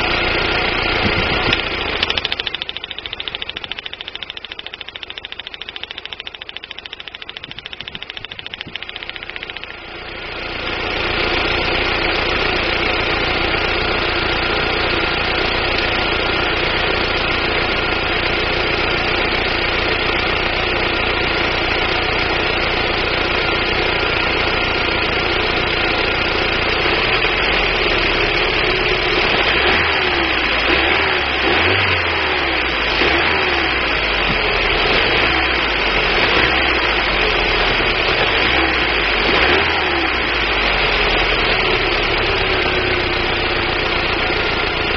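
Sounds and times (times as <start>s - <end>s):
car engine idling unevenly: 40.5s - 44.9s.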